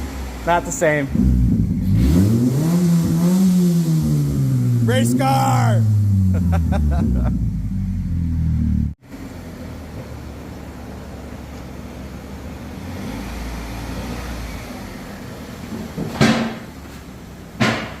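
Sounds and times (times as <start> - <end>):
car engine idling: 3.8 - 12.9.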